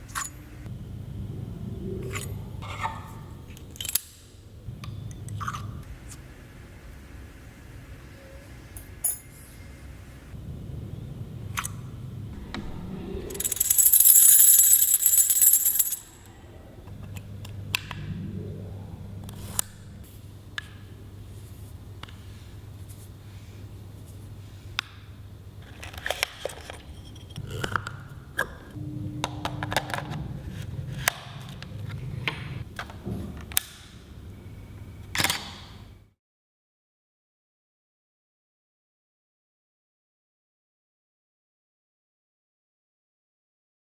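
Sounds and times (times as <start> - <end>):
small metal clicks and clinks: 13.4 - 16.2.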